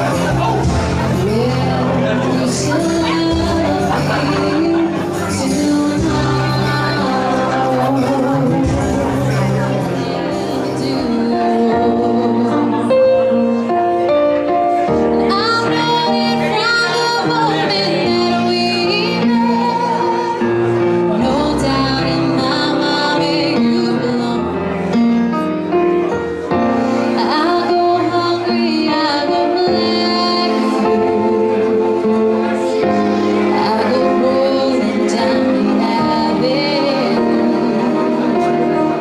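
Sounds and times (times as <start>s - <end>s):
pop music with female vocal: 0.0s - 12.8s.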